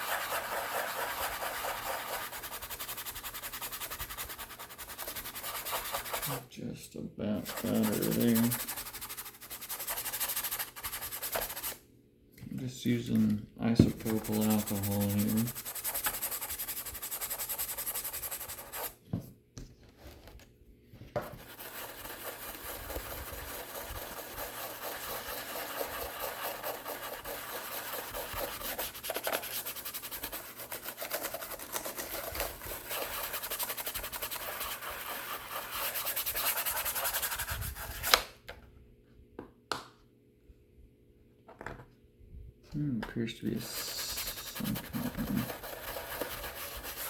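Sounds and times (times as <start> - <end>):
scrubbing laptop: 0.0 - 6.4, 7.4 - 11.8, 13.8 - 19.0, 21.2 - 38.2, 43.6 - 47.0.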